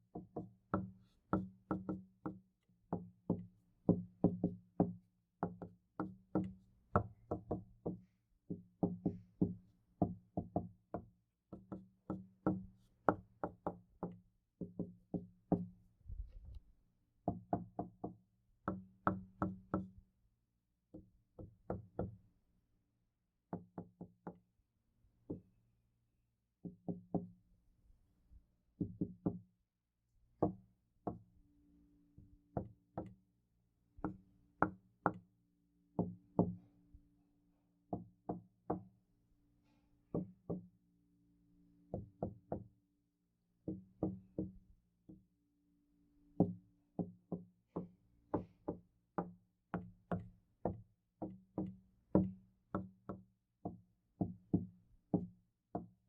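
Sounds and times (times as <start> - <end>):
knuckles knocking on door: 0.2 - 15.7, 28.8 - 29.4.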